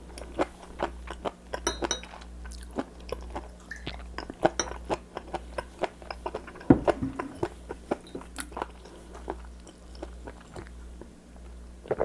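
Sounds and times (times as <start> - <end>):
loud thump: 6.7 - 7.4.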